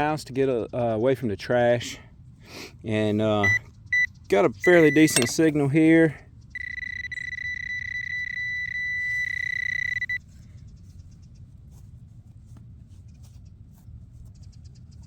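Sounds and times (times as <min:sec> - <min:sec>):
metal detector beeping: 0:03.4 - 0:05.8, 0:06.5 - 0:10.2.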